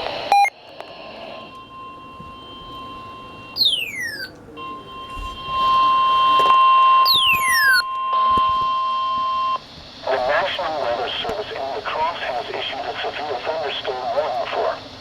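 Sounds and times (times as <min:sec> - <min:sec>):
falling electronic chirps: 0:03.3 - 0:09.6
steady high alert tone: 0:03.4 - 0:05.0, 0:07.0 - 0:07.8.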